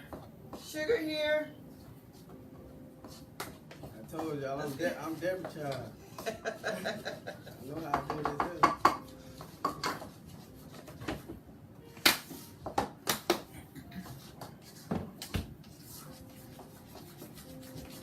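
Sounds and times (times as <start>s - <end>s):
spoons stirring icing in bowls: 15.7s - 18.0s.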